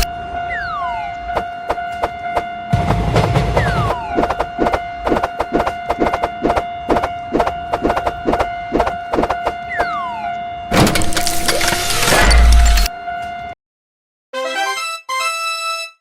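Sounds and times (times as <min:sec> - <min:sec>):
railroad crossing bell ringing: 0:12.7 - 0:13.5.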